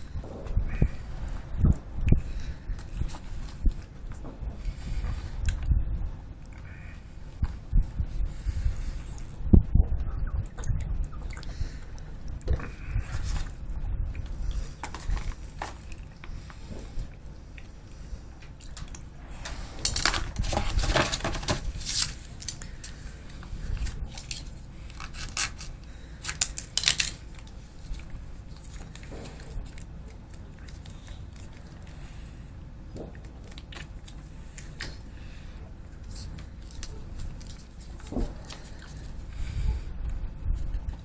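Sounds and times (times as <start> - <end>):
plastic pouches crinkling and tearing: 18.7 - 32.0, 33.2 - 35.1, 36.0 - 39.1.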